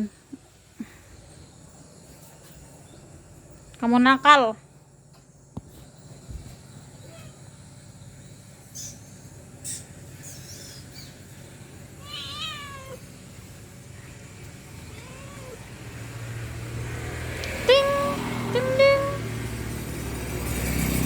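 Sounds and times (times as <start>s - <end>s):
cat meowing: 12.0s - 13.1s, 14.8s - 15.9s, 17.4s - 19.3s.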